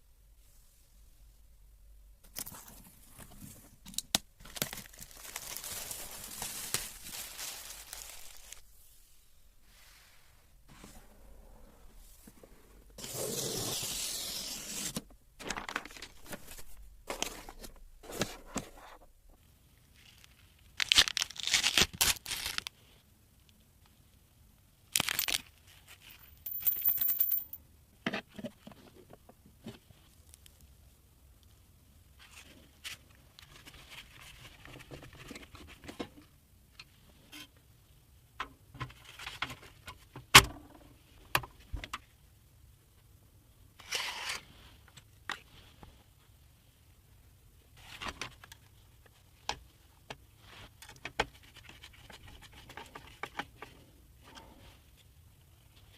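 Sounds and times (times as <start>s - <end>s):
packaging tearing and crinkling: 4.4s - 8.6s, 20.8s - 22.7s, 25.0s - 25.5s.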